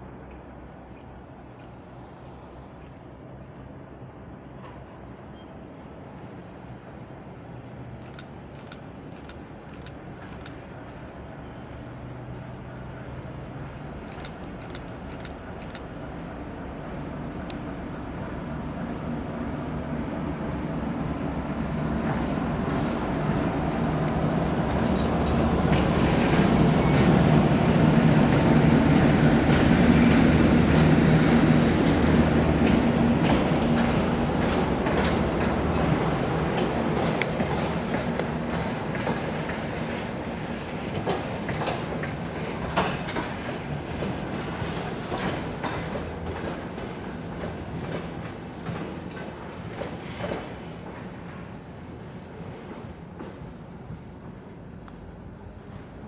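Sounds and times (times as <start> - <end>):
diesel locomotive engine droning: 0.0 - 56.0
train wheels clacking over rail joints: 24.7 - 51.4.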